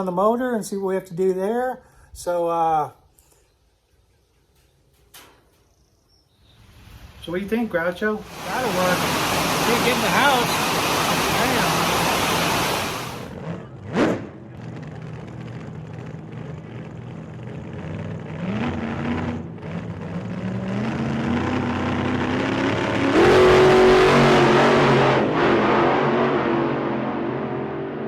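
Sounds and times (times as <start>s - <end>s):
car engine revving: 8.2s - 28.0s.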